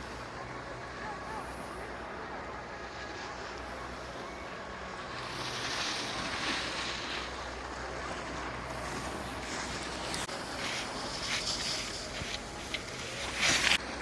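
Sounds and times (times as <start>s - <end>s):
hissing scrape over snow: 2.8s - 13.8s.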